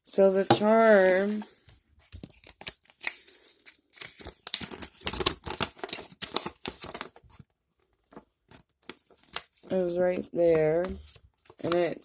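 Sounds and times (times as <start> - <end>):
plastic wrapping crinkling: 2.2 - 9.8.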